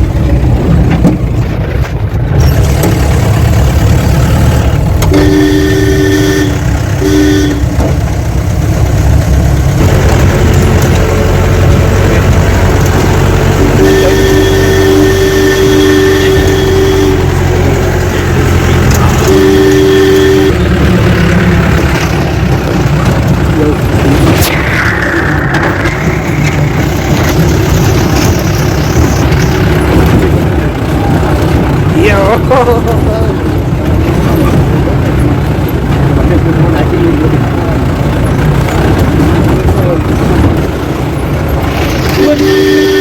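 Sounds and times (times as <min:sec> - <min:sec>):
jeep engine running: 0:00.0 - 0:43.0
two-note tone: 0:05.0 - 0:07.8, 0:13.6 - 0:20.8, 0:42.2 - 0:43.0.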